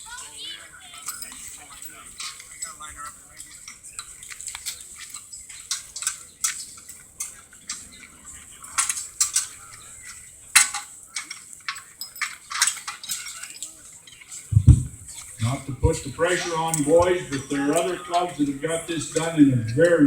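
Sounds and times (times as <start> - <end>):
metal parts and tools clinking: 0.9 - 20.0.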